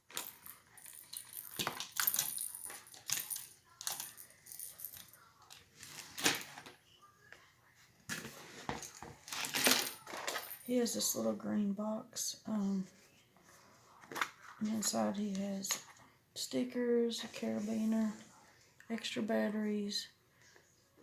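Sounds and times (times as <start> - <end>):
plastic toys and packaging handled: 0.0 - 11.1, 12.9 - 16.2.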